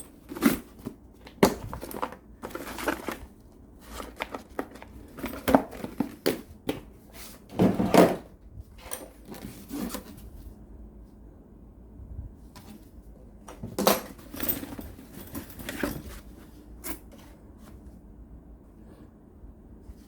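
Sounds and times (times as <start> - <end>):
tools and cases handled: 0.0 - 10.3, 13.5 - 17.4.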